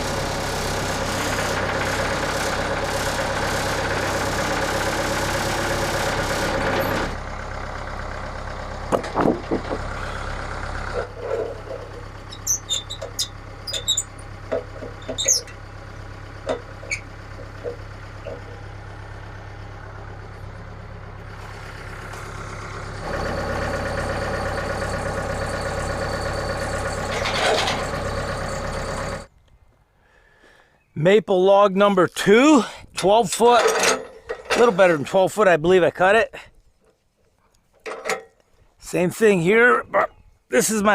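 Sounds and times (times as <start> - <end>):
engine running: 0.0 - 30.6
clunks and knocks: 8.9 - 10.2, 10.9 - 15.6, 16.4 - 18.6, 24.8 - 29.2, 33.4 - 34.8, 37.7 - 38.4.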